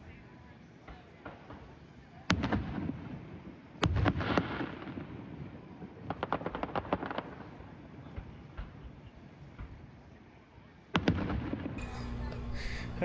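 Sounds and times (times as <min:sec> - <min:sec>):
fireworks pops: 0:06.0 - 0:09.8.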